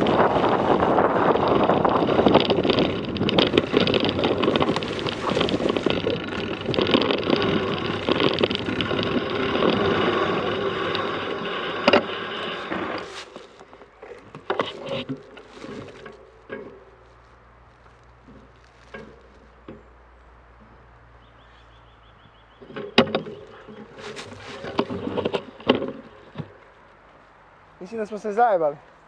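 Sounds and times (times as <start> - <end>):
wind buffeting microphone: 0.0 - 13.4
bike rattling knocks: 0.0 - 17.2, 18.2 - 20.0, 22.3 - 26.7
bike tyres on dirt trail: 0.0 - 29.0.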